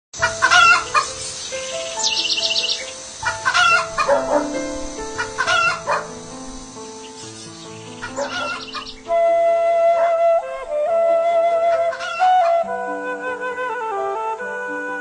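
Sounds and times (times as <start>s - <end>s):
hens clucking: 0.2s - 1.2s, 2.6s - 6.3s, 8.0s - 9.0s
background music of held notes: 0.2s - 15.0s
rooster crowing: 0.3s - 1.1s, 3.4s - 4.6s, 5.2s - 6.2s, 8.1s - 9.0s.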